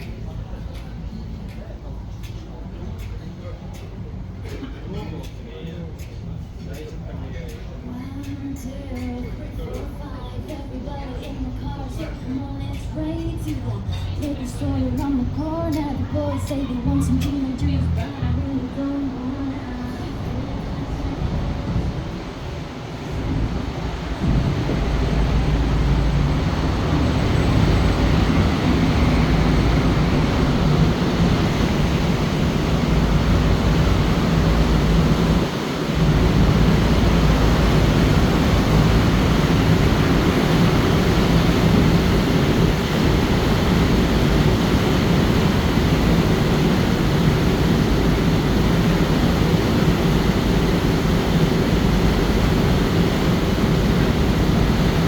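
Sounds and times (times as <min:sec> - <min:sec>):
ship engine hum: 0:07.2 - 0:55.0
water rushing: 0:20.3 - 0:55.0.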